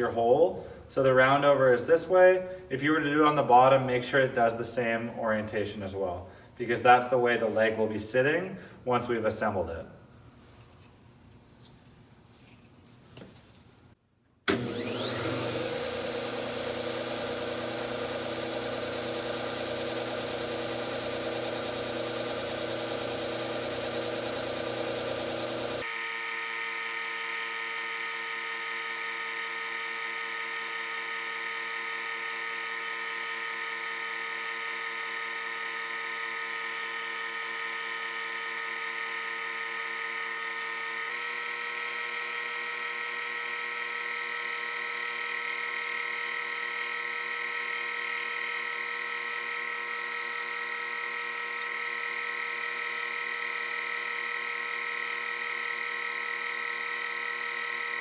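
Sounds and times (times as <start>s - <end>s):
bench sander sanding wood: 14.9s - 25.8s.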